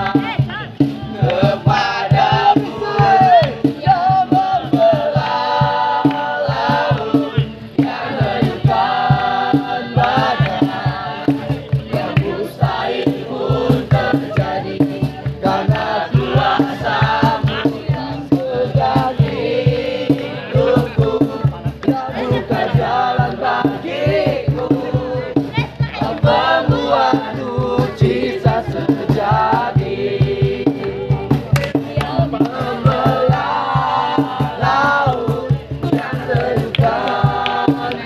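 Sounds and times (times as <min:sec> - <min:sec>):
group singing worship song: 0:00.0 - 0:38.0
instrumental backing with beat: 0:00.0 - 0:38.0.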